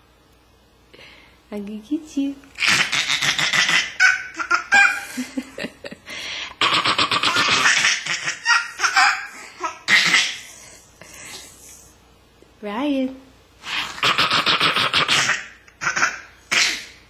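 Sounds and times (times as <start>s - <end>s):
baby laughing: 2.6s - 5.9s, 6.6s - 10.6s, 14.0s - 17.0s.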